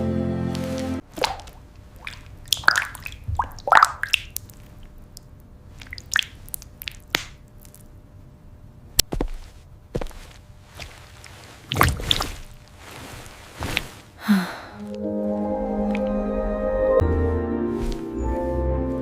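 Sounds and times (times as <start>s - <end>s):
music: 0.0s - 1.0s, 14.8s - 19.0s
wet squishing and dripping: 1.0s - 7.9s, 10.8s - 12.8s.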